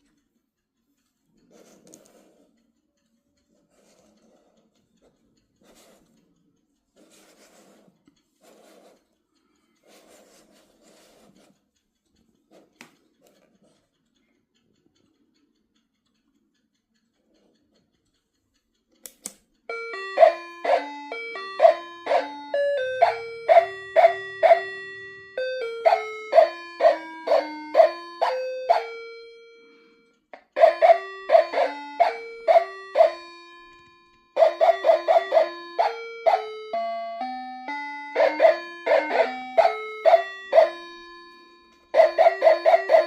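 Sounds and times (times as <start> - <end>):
alarm clock click: 16.6 - 43.0
electronic alarm chime melody: 19.7 - 43.0.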